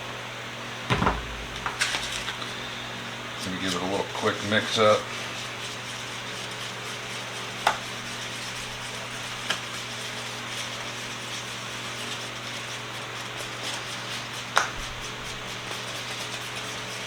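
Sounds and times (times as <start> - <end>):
steady low hum: 0.9 - 3.0.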